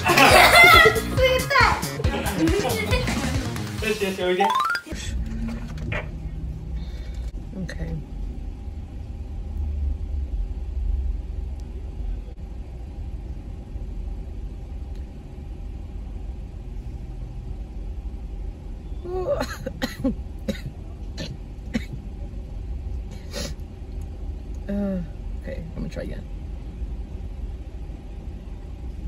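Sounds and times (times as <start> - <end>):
low rumble: 5.0 - 29.0
person coughing: 19.3 - 22.0.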